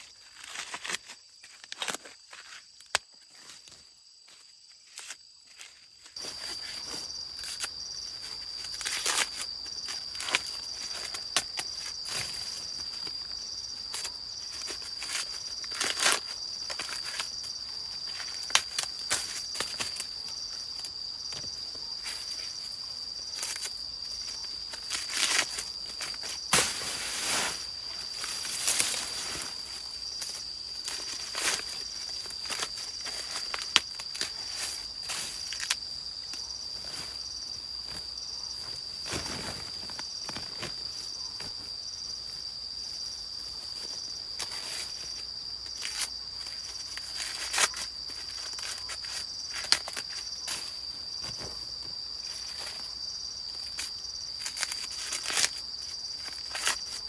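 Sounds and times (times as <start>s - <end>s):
insects trilling: 0.0s - 57.0s
dry rustling and crackling: 5.6s - 41.7s.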